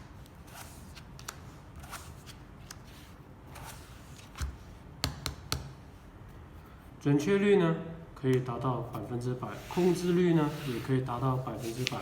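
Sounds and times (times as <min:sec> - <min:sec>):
playing cards sliding and tapping: 0:09.6 - 0:12.0.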